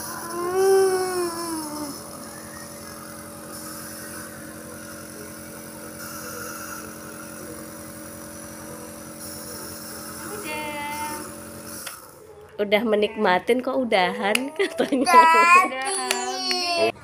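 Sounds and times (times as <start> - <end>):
compressor motor humming: 0.0 - 12.2.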